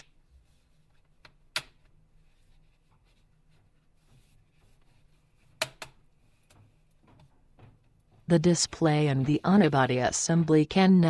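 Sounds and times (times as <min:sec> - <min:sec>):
faint scratching and rubbing: 0:02.2 - 0:07.4, 0:08.1 - 0:10.2.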